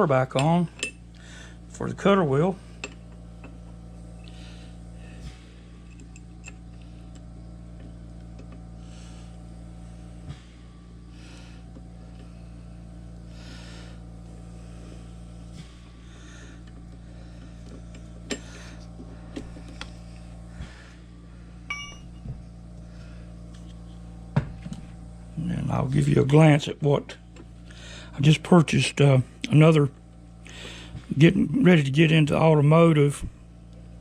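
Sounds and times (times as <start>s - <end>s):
low hum: 0.0s - 34.0s.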